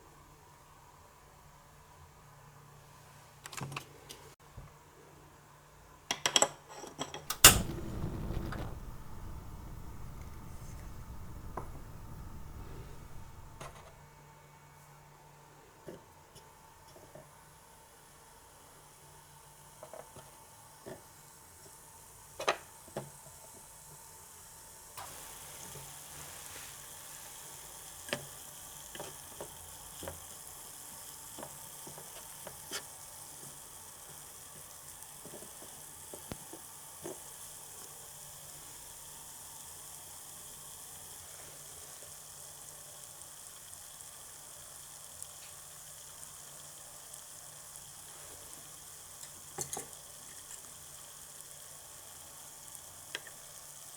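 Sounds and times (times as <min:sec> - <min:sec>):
frying sizzle: 0:07.3 - 0:14.0, 0:17.4 - 0:53.9.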